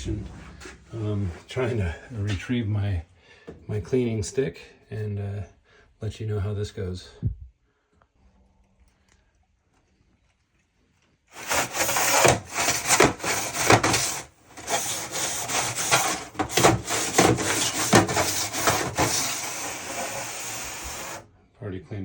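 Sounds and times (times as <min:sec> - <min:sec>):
scraping inside a dryer vent duct: 0:00.0 - 0:02.4, 0:11.3 - 0:21.3.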